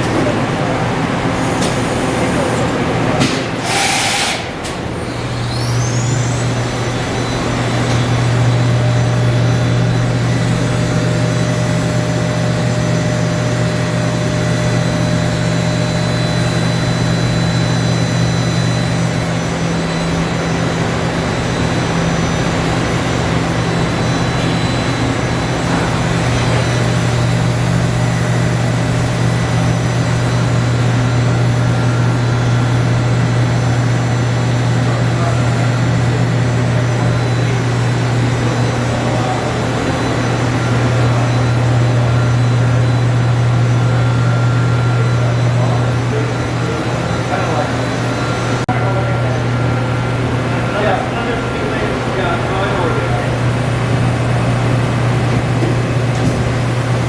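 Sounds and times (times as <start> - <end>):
machining center humming and whining: 0.0 - 57.0.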